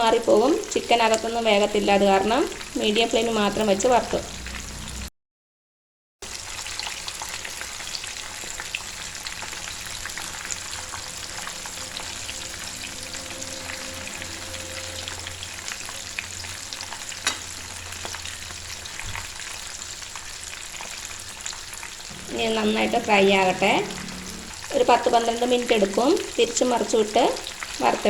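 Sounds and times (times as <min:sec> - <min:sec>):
chicken deep-frying in oil: 0:00.0 - 0:05.1, 0:06.2 - 0:28.0.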